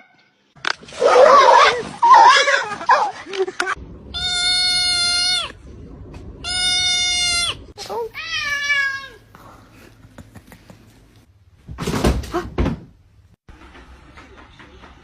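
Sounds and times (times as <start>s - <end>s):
voice-like cry: 1.0s - 3.2s
cat meowing: 4.2s - 5.6s, 6.4s - 9.2s.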